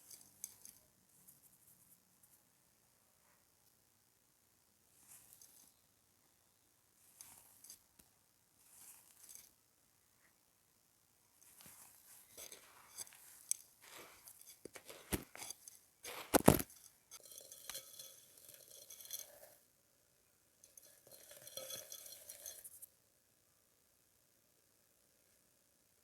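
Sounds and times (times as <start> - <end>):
dry clay crumbling and crunching: 13.8 - 18.1.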